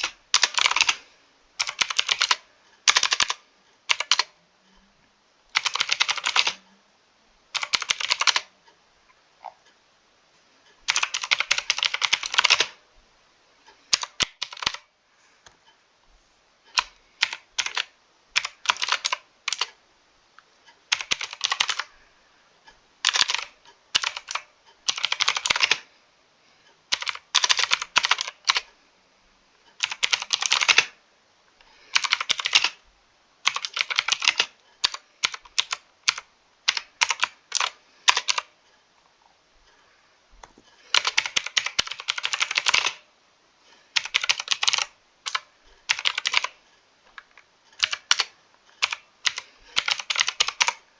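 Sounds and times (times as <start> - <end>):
mechanical keyboard typing: 0.0 - 1.0, 1.6 - 4.4, 5.5 - 6.6, 7.5 - 8.5, 10.8 - 12.8, 13.9 - 14.9, 16.7 - 19.8, 20.9 - 21.9, 23.0 - 25.9, 26.9 - 28.7, 29.8 - 31.0, 31.9 - 32.8, 33.4 - 38.5, 40.9 - 43.0, 44.0 - 46.6, 47.8 - 50.9.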